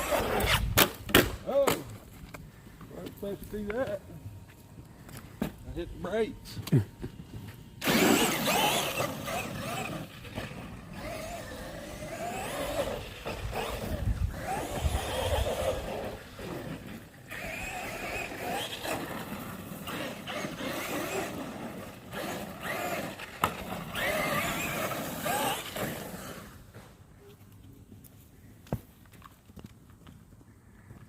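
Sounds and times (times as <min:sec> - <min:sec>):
electric motor whining: 0:07.8 - 0:26.7.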